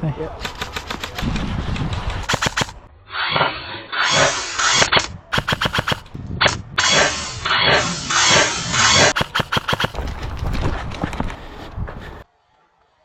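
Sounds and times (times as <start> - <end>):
airsoft gun full-auto bursts: 0.4 - 1.2, 2.3 - 2.8, 4.1 - 6.1, 6.8 - 10.0.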